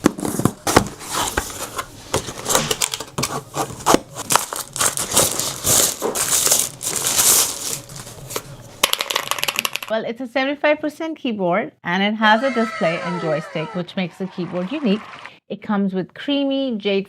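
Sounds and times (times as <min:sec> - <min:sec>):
plastic packaging crinkling: 0:03.8 - 0:08.5.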